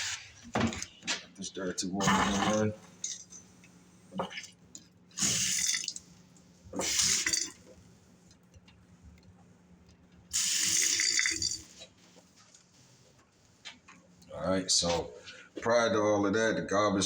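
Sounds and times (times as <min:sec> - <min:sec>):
water gushing into sink: 0:02.0 - 0:02.7, 0:05.2 - 0:06.0, 0:06.8 - 0:07.7, 0:10.3 - 0:11.8.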